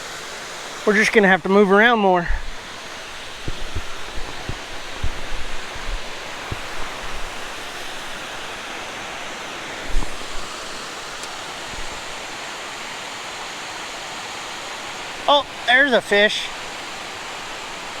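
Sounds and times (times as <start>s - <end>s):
river water rushing over spillway: 0.0s - 18.0s
low thumps: 3.4s - 7.4s.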